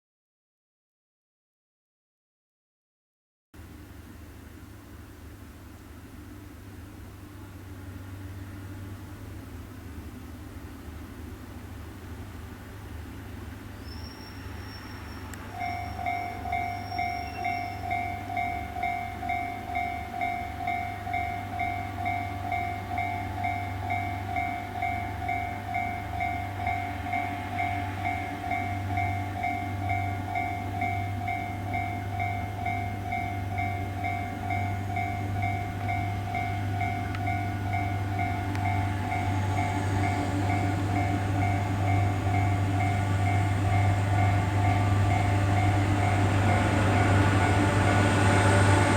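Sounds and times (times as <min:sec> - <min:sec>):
railroad crossing bell ringing: 0:13.9 - 0:48.9
steady low hum: 0:18.5 - 0:48.9.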